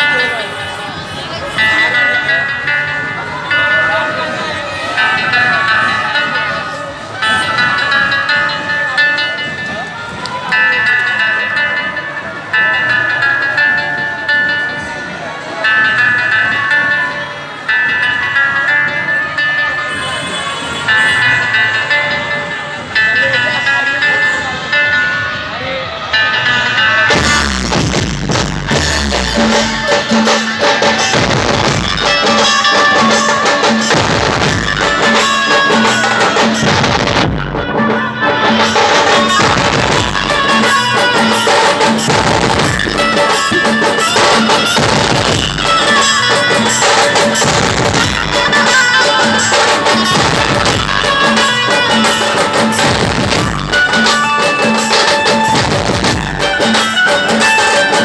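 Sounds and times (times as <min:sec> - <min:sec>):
band music with driving drums: 0:27.1 - 0:58.0.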